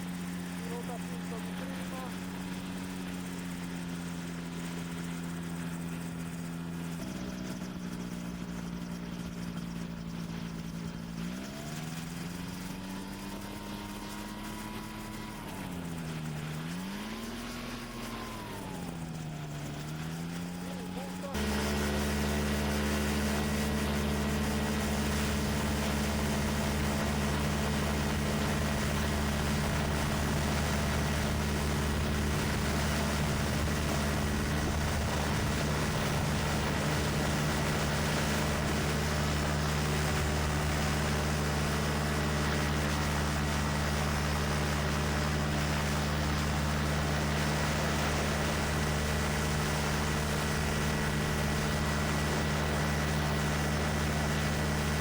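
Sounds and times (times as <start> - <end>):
ultralight aircraft engine running: 0.0 - 55.0.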